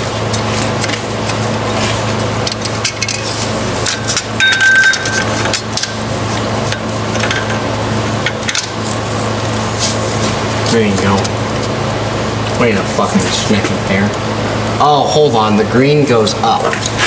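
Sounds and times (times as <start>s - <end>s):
steady low hum: 0.0s - 17.0s
brief high ringing tone: 4.4s - 5.3s.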